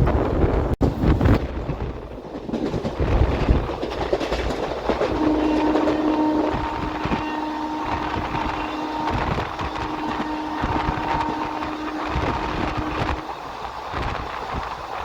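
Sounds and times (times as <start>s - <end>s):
passenger train running: 0.0s - 15.0s
wheel clicks on rail joints: 1.6s - 7.3s
train horn: 5.0s - 13.5s.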